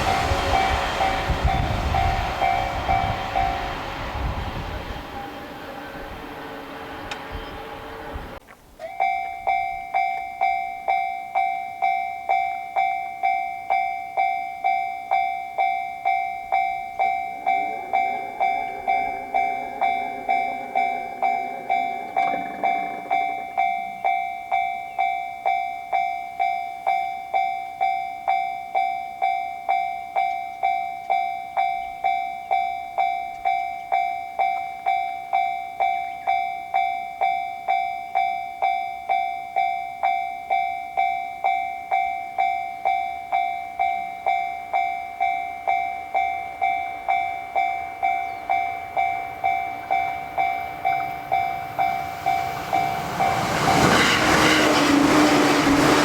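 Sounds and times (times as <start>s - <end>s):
low hum: 0.0s - 8.4s, 16.4s - 24.4s
level-crossing warning bell: 0.0s - 56.0s.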